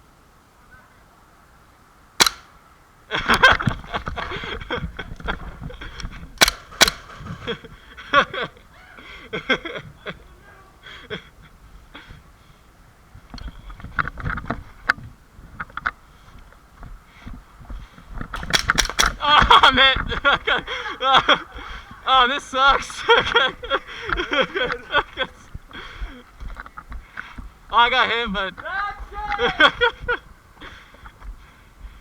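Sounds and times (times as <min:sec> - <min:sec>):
airsoft gun shots: 0:02.2 - 0:02.6, 0:06.4 - 0:07.4, 0:18.4 - 0:19.6
noisy clatter: 0:05.0 - 0:08.0, 0:18.2 - 0:20.4.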